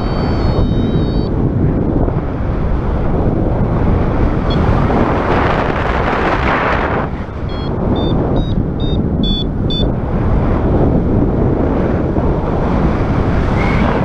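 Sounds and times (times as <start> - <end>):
variometer short high beeps: 0.0 - 1.4, 7.4 - 10.0
wind buffeting microphone: 0.0 - 14.0.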